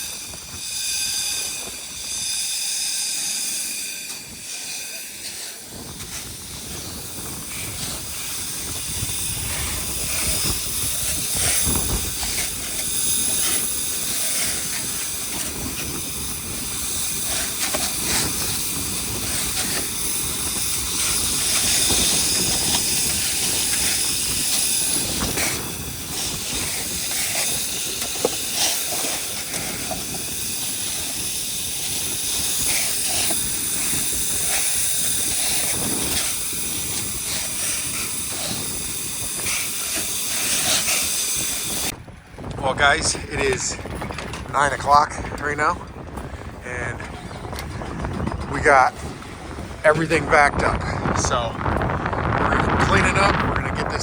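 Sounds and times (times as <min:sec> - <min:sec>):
vacuum rushing hiss: 0:00.0 - 0:42.0
high whine: 0:00.0 - 0:54.0.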